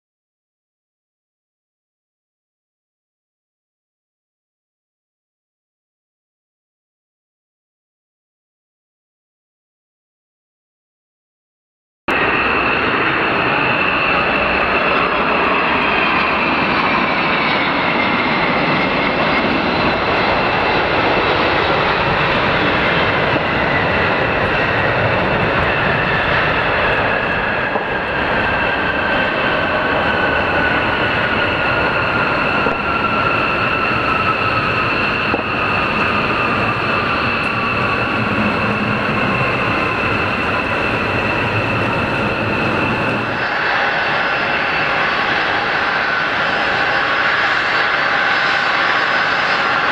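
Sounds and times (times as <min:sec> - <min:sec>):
high engine whine: 0:12.1 - 0:49.9
jet engines roaring: 0:12.1 - 0:49.9.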